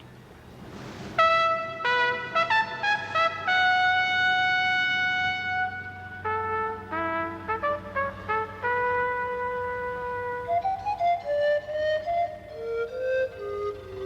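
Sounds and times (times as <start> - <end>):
trumpet melody: 1.1 - 12.5
background music: 1.2 - 14.0.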